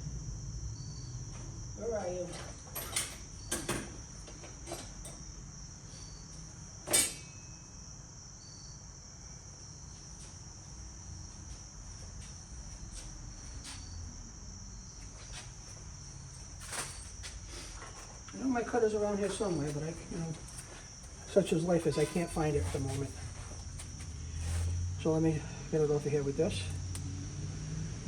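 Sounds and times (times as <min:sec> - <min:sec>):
crickets trilling: 0:00.0 - 0:28.0
tools rummaged clicking and rattling: 0:02.4 - 0:05.2.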